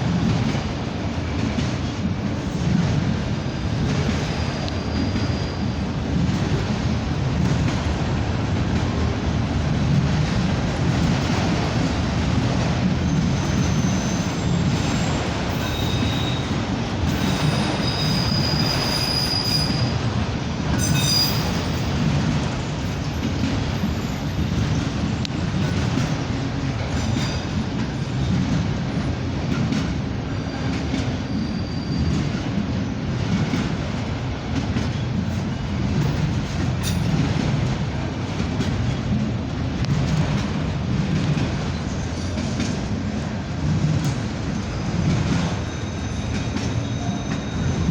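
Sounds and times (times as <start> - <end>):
freight train wheels rumbling: 0.0 - 47.9
high-pitched wheel squeals: 4.3 - 5.9, 13.2 - 20.0, 20.8 - 21.9, 31.3 - 32.3, 45.5 - 47.9.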